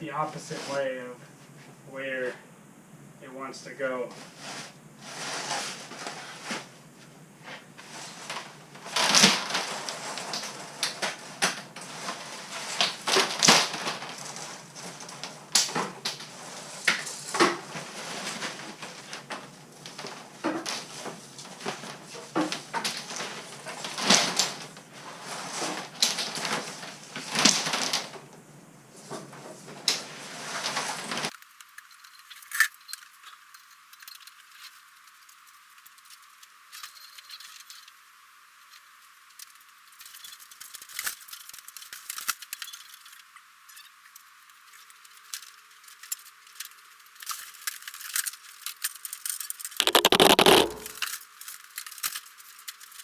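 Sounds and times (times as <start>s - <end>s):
plastic tubing rustling and scraping: 4.1s - 6.7s, 15.8s - 26.9s, 38.7s - 53.0s
scattered clicks: 49.8s - 51.0s.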